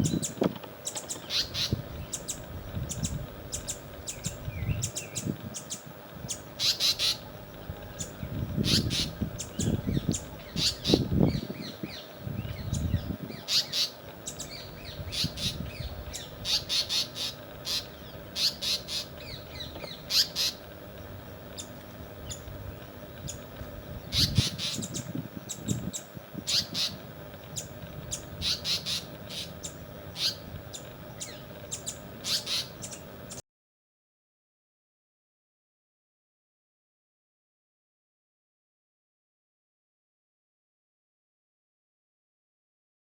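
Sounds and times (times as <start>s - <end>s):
birds calling sharply: 0.0s - 33.4s.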